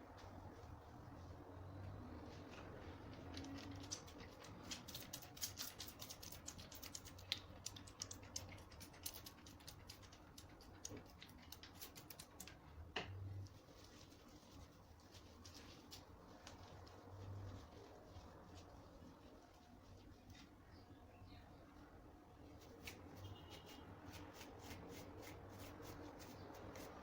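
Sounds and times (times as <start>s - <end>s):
faint rapid clicking and crackling: 2.2s - 20.6s.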